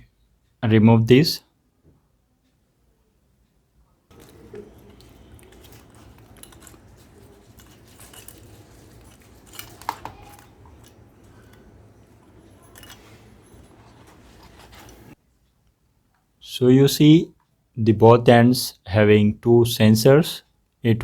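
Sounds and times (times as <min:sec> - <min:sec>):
parts clicking and clattering: 0:04.1 - 0:15.2.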